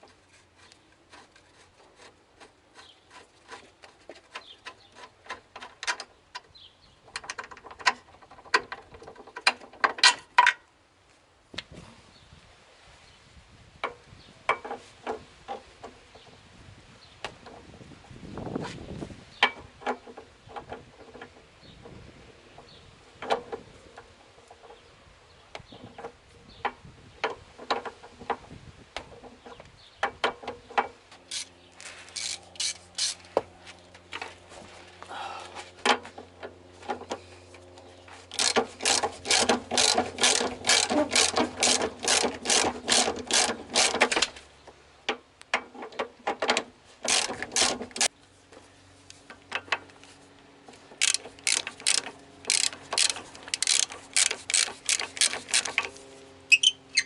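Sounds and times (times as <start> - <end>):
socket ratchet clicking: 38.3 - 44.2, 51.0 - 55.9.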